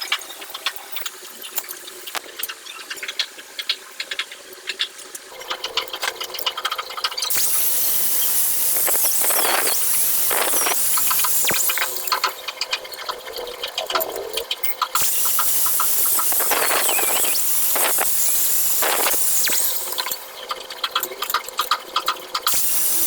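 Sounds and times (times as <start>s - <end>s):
angle grinder humming: 7.3s - 12.4s, 15.0s - 20.4s, 22.5s - 23.0s
hissing cut with high squeal: 7.3s - 12.4s, 15.0s - 20.4s, 22.5s - 23.0s.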